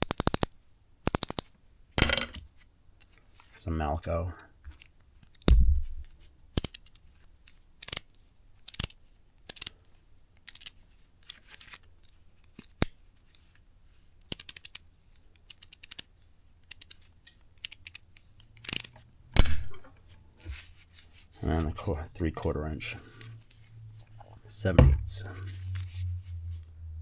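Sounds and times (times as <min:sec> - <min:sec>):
ratchet wrench clicking: 0:00.0 - 0:00.5, 0:01.1 - 0:02.4, 0:07.8 - 0:08.1, 0:08.7 - 0:09.7, 0:17.6 - 0:19.0
metal tools clicking and clinking: 0:02.0 - 0:02.4, 0:17.7 - 0:19.0.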